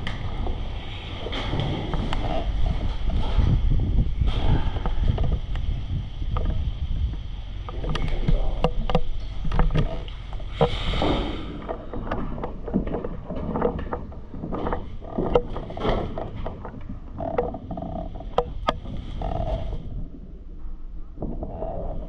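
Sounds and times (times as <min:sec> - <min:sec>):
wind rumbling on microphone: 0:00.0 - 0:22.0.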